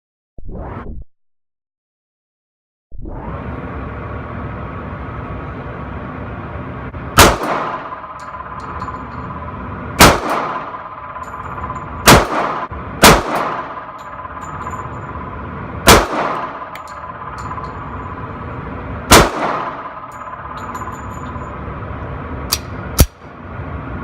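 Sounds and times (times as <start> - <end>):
pistol shots with echo: 7.2 - 8.5, 10.0 - 11.4, 12.0 - 14.4, 15.8 - 17.2, 19.1 - 20.6
faint high clinks: 20.1 - 21.6.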